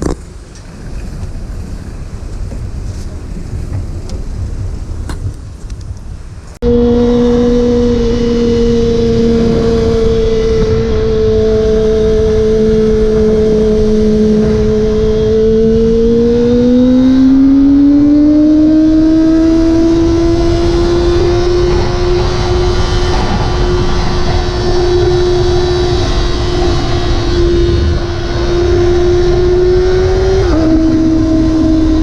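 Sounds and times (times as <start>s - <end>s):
wind rush: 0.0s - 32.0s
motorcycle engine droning: 6.6s - 32.0s.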